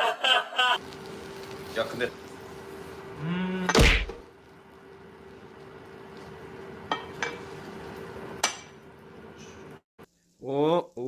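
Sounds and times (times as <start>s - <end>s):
faint hum and hiss: 0.0s - 11.0s
kitchenware clinking: 6.8s - 9.7s.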